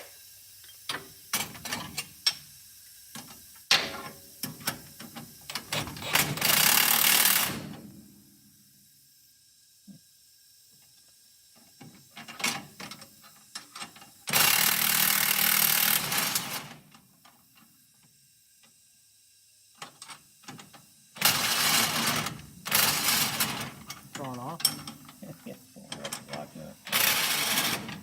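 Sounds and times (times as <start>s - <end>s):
power tool running: 14.3s - 16.6s, 26.3s - 28.0s.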